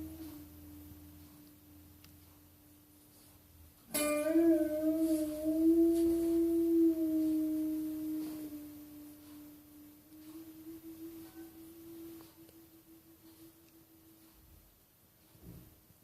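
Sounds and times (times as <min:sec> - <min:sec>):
faint steady hum: 0:00.0 - 0:16.0
dog howling: 0:03.9 - 0:14.1.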